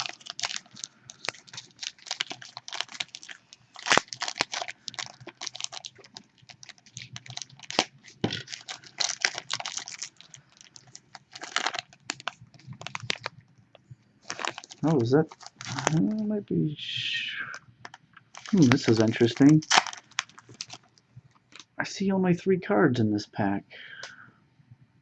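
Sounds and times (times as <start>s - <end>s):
wrapper crinkling and tearing: 0.0s - 13.5s, 14.2s - 16.2s, 17.8s - 21.8s
cards being shuffled: 18.4s - 20.8s.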